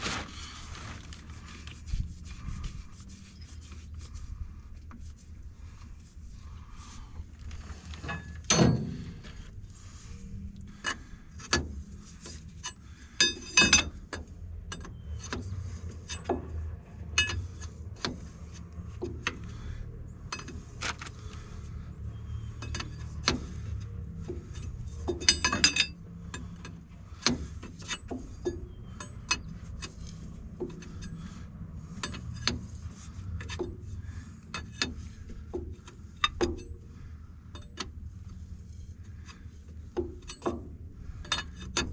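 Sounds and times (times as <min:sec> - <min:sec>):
low steady hum: 0:00.0 - 0:41.9
ringing metal clanks: 0:08.0 - 0:09.3, 0:12.6 - 0:14.0, 0:24.5 - 0:26.0
wrench clinking on metal fittings: 0:24.4 - 0:26.8.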